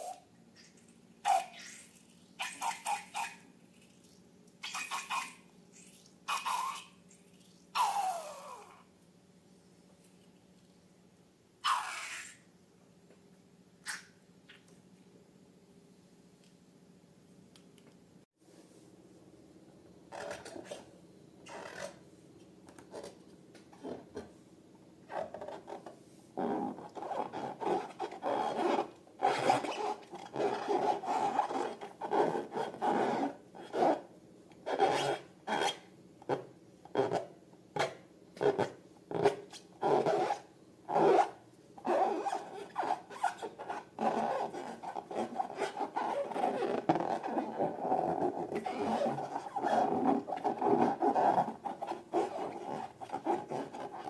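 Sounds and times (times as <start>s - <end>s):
rasping rubbing strokes: 41.0s - 54.0s.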